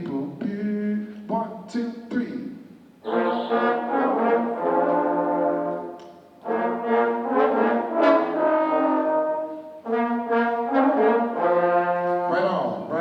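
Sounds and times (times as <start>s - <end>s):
trombones playing low notes: 3.0s - 13.0s.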